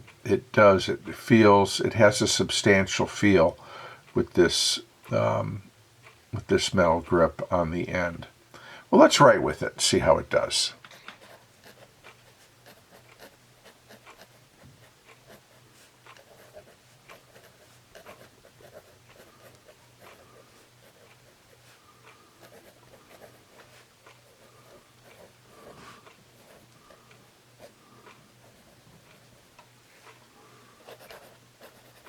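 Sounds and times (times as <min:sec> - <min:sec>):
pencil scratching on paper: 0:10.8 - 0:27.0, 0:30.8 - 0:32.0.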